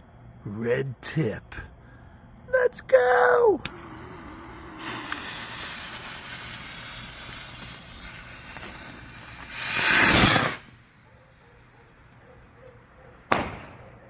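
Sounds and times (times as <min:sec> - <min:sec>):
firework fuse hissing: 0:03.0 - 0:13.8
rocket launching with rushing hiss: 0:03.7 - 0:11.1, 0:13.3 - 0:13.8.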